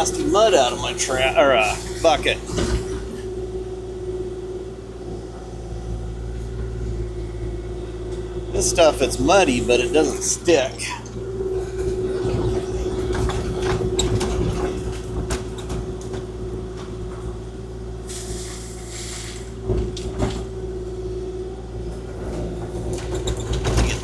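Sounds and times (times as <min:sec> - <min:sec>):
excavator diesel engine humming: 0:00.0 - 0:24.0
hydraulic whine: 0:00.0 - 0:24.0
brief hiss: 0:18.1 - 0:19.5.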